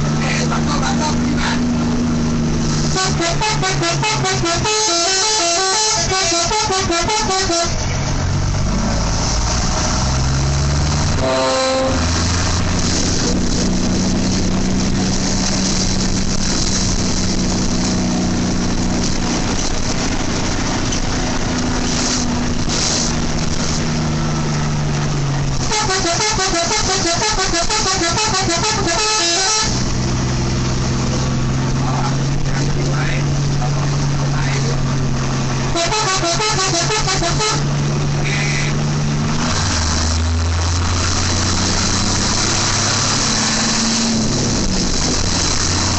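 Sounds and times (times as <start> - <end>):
multi-tone bus horn playing a tune: 2.8 - 8.1, 11.1 - 13.8, 25.6 - 30.0, 35.7 - 38.8.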